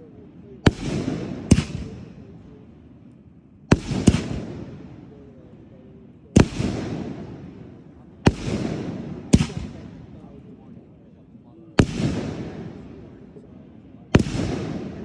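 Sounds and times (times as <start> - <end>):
echoing rumble: 0.0 - 15.0
firework shells bursting: 0.7 - 2.2, 3.7 - 5.1.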